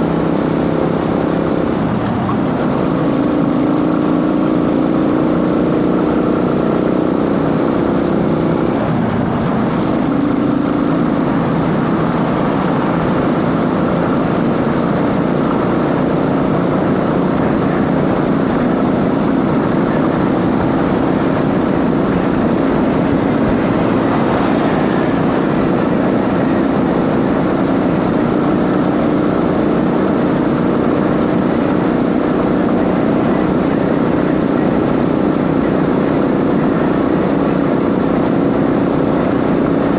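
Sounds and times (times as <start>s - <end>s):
motorcycle engine running: 0.0s - 39.9s
engine intake noise: 9.4s - 28.7s.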